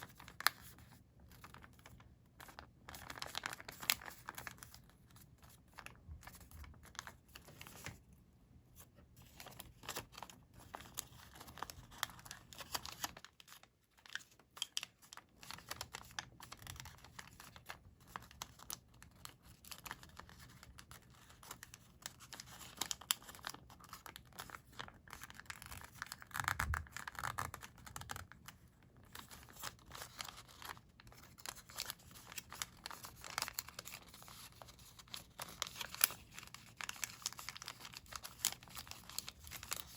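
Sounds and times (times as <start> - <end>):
paper crinkling and rustling: 0.0 - 39.9.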